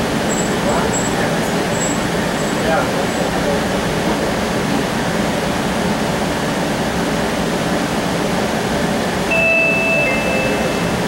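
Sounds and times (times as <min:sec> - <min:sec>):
streetcar cabin rumble and hiss: 0:00.0 - 0:11.0
two-note electronic chime: 0:09.3 - 0:11.0.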